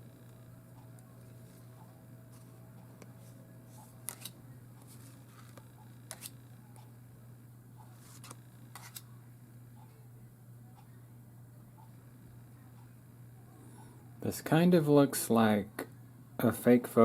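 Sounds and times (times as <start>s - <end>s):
cards flipping clicks: 4.0s - 6.4s, 8.0s - 9.1s.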